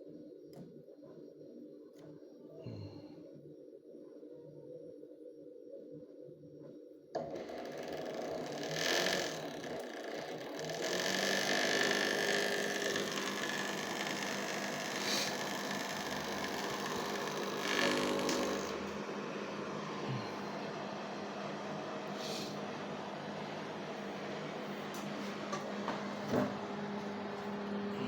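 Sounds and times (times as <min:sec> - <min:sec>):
microwave hum and fan: 0:07.1 - 0:28.0
microwave oven switching on: 0:07.2 - 0:28.0.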